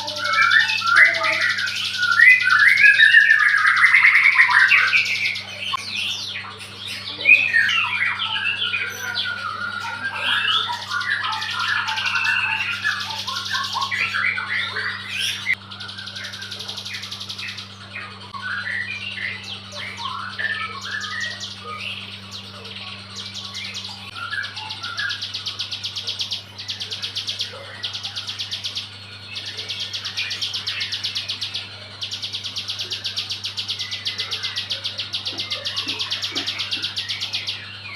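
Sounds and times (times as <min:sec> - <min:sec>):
bird chirping and twittering: 0:00.0 - 0:37.9
rapid buzzy bird trill: 0:00.0 - 0:37.9
steady low hum: 0:00.0 - 0:37.9.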